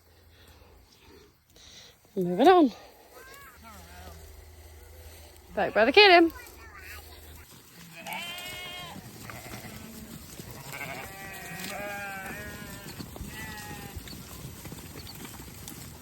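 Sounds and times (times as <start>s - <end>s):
sheep bleating: 3.6s - 5.2s, 7.4s - 14.1s.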